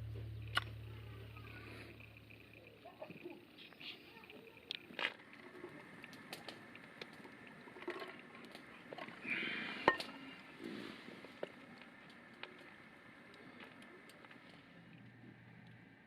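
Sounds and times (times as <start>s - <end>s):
sharp click: 0.4s - 0.8s
faint clicks and handling noises: 2.0s - 15.9s.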